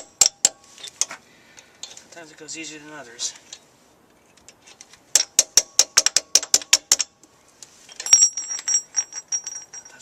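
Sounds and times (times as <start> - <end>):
ringing metal clink: 8.0 - 10.0.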